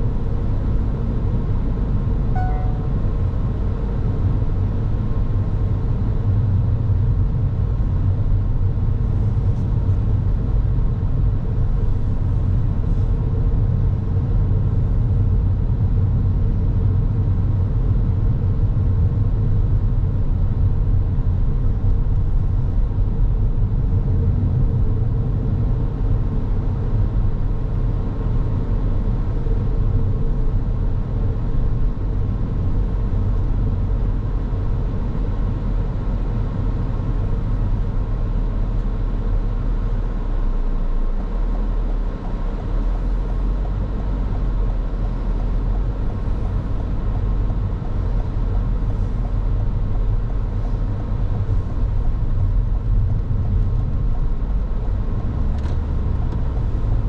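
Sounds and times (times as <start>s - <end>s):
faint steady hum: 0.0s - 39.0s
car road and engine rumble: 0.0s - 57.0s.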